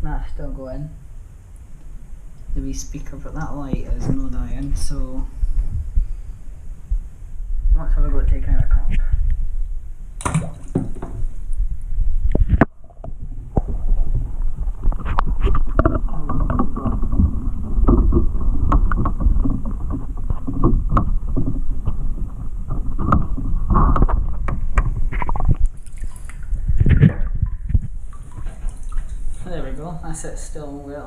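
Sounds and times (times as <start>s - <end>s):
knocks and handling noise: 10.2s - 11.5s, 12.2s - 29.4s
water sloshing in a container: 10.2s - 30.2s.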